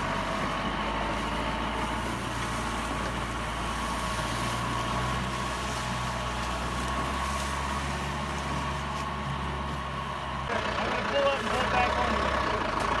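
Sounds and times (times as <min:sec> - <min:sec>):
tractor diesel engine running: 0:00.0 - 0:13.0.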